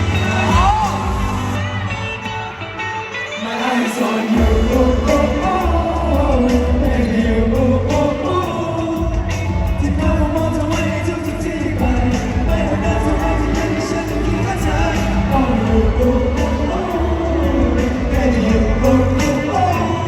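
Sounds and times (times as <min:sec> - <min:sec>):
live pop band: 0:00.0 - 0:20.0
person singing: 0:00.0 - 0:20.0.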